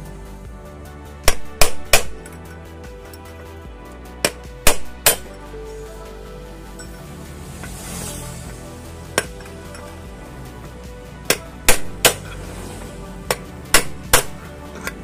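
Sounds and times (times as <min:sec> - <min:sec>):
soft background music: 0:00.0 - 0:15.0
hammer striking metal: 0:01.2 - 0:02.5, 0:04.2 - 0:05.4, 0:11.3 - 0:12.4, 0:13.3 - 0:15.0.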